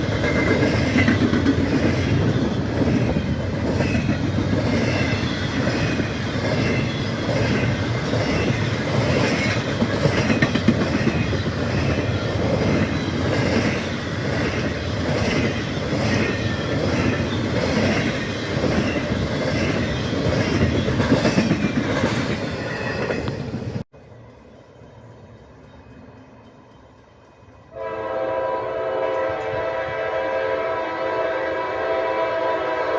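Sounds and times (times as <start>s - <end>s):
high wheel squeal: 16.1s - 23.6s.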